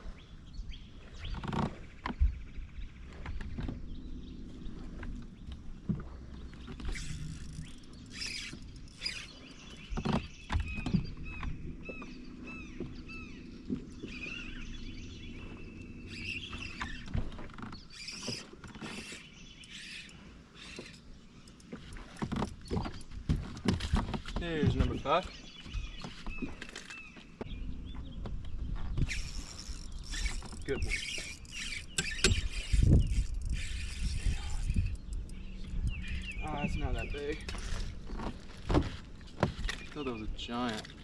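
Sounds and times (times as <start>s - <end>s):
knocks and rattles on a boat: 1.2s - 14.6s, 16.5s - 19.1s, 21.7s - 29.1s, 34.0s - 41.0s
short high chirps and squeaks: 6.8s - 9.8s, 16.1s - 17.2s, 29.0s - 35.0s.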